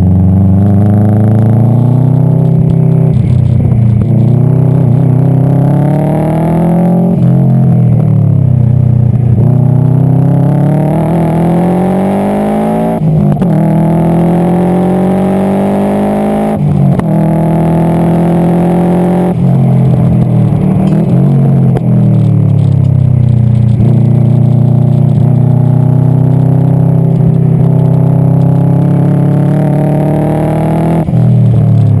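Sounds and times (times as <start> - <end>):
car engine accelerating hard: 0.0 - 32.0.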